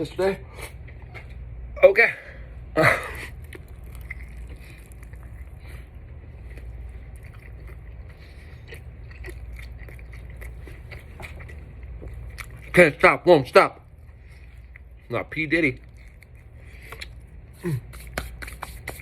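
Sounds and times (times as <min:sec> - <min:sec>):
steady low hum: 0:00.0 - 0:19.0
person chewing chicken wing: 0:03.2 - 0:12.7, 0:15.8 - 0:19.0.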